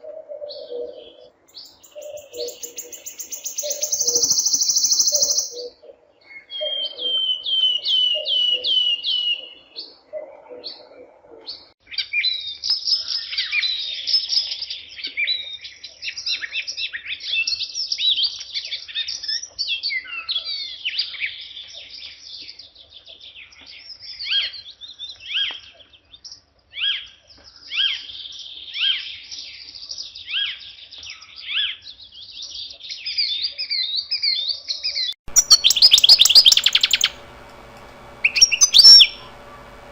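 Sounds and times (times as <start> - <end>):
small birds chirping: 0.6 - 5.8, 35.3 - 39.9.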